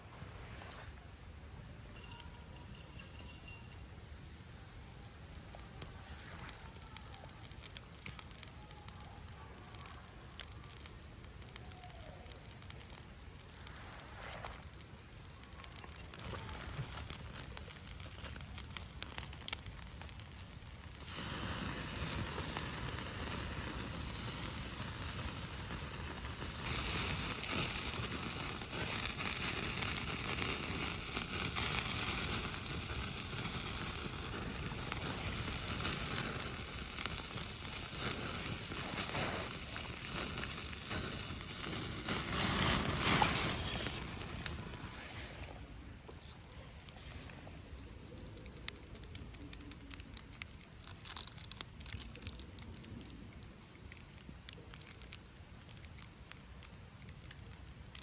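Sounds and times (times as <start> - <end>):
wood fire crackling and popping: 2.0 - 58.0
frying sizzle: 4.0 - 45.3.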